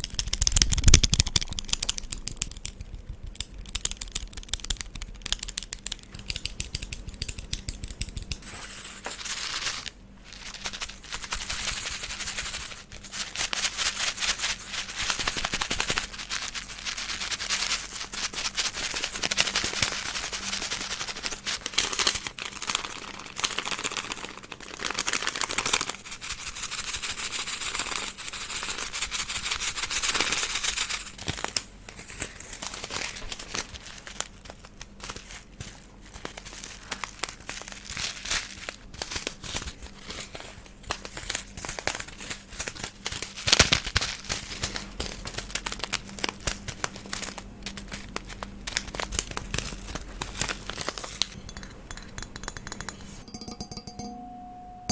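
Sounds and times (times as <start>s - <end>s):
crisp tapping and clicking: 0.0s - 26.3s, 30.1s - 54.0s
faint low hum: 25.8s - 54.9s.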